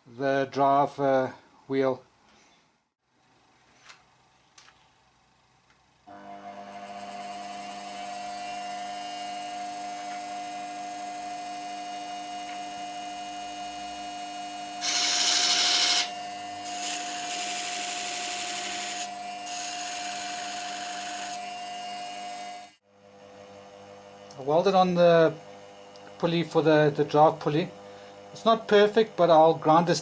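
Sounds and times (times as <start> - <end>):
angle grinder cutting steel: 14.8 - 21.5.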